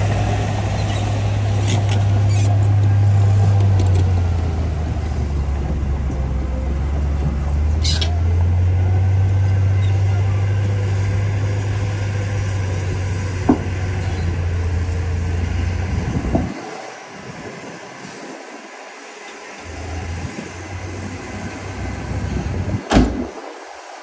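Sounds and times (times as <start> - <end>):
heavy machine diesel engine rumbling: 0.0 - 24.0
high squeal: 7.8 - 8.4, 9.6 - 10.4.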